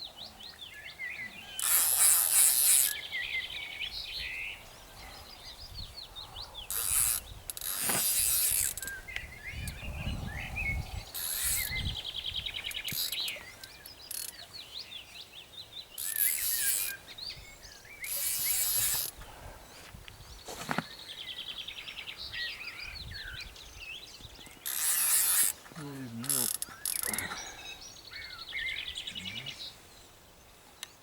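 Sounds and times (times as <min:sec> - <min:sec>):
songbirds chirping and trilling: 0:00.0 - 0:31.0
rustling near microphone: 0:16.1 - 0:21.6.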